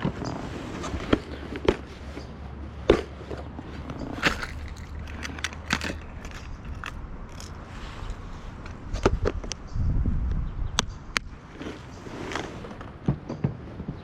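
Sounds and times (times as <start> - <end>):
steady low rumble: 0.0 - 11.8.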